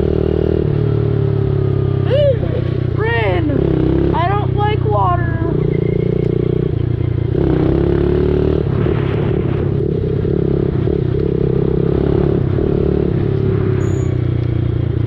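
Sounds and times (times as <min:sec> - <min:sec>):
dirt bike engine running: 0:00.0 - 0:15.0.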